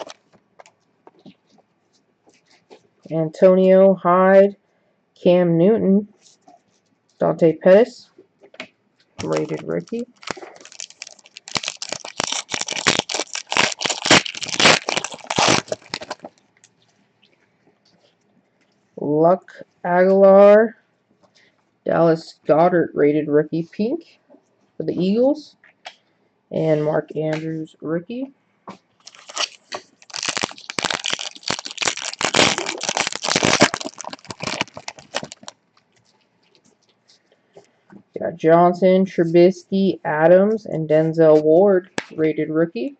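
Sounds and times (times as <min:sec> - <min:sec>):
foil wrapper tearing and crinkling: 0:00.0 - 0:00.2, 0:09.2 - 0:16.4, 0:29.0 - 0:35.6.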